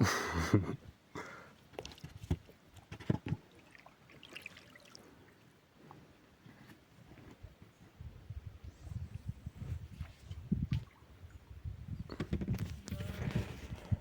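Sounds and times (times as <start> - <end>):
water splashing and trickling: 1.7 - 5.6.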